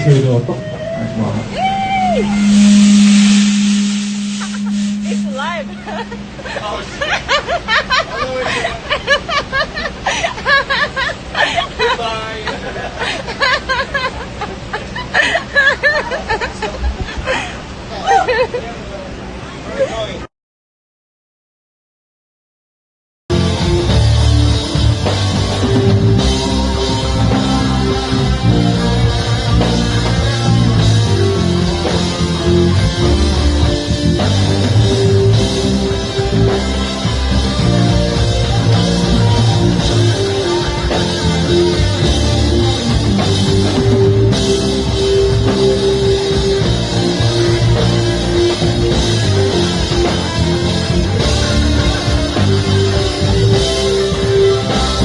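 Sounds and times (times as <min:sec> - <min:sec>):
electric guitar: 0:00.0 - 0:07.7, 0:23.3 - 0:55.0
rock band playing live: 0:02.0 - 0:07.8, 0:23.3 - 0:55.0.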